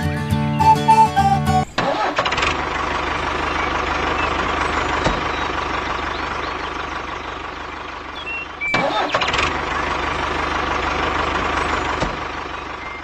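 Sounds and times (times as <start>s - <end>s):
music: 0.0s - 1.7s
small engine chugging: 0.6s - 13.0s.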